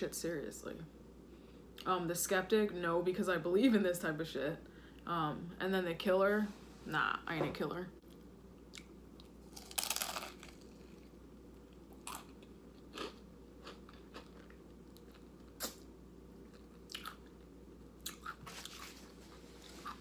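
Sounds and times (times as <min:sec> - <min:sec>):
person crunching chip: 0:09.3 - 0:11.1, 0:11.9 - 0:15.8
chewing with mouth clicks: 0:16.4 - 0:18.9.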